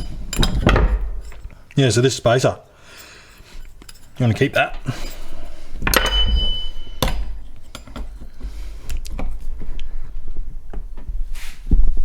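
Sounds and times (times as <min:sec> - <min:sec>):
small metal parts clinking: 0:00.0 - 0:08.5.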